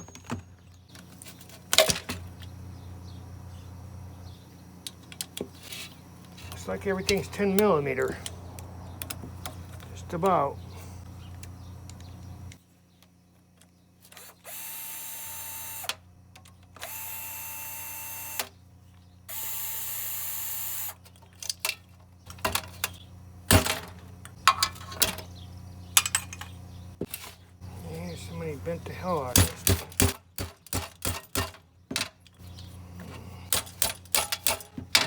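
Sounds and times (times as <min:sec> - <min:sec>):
power drill running: 0:14.4 - 0:15.9, 0:16.8 - 0:18.5, 0:19.3 - 0:21.0
metal clicks and clanks: 0:33.5 - 0:35.0.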